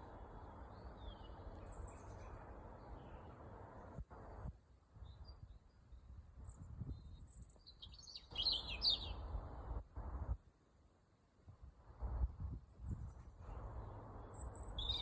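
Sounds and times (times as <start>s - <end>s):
small birds chirping: 0.0s - 3.9s, 5.0s - 9.3s, 12.8s - 15.0s.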